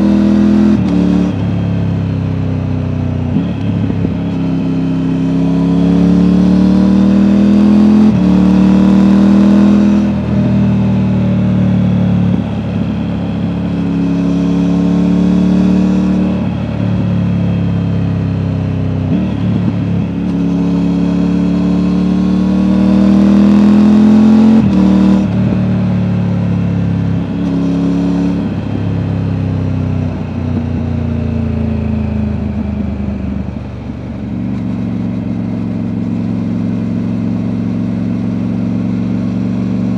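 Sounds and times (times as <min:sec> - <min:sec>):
motorcycle engine accelerating through gears: 0:00.0 - 0:39.9.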